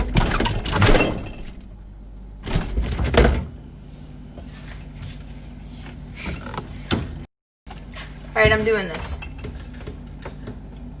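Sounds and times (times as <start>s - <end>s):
refrigerator door thuds and knocks: 2.4s - 3.6s.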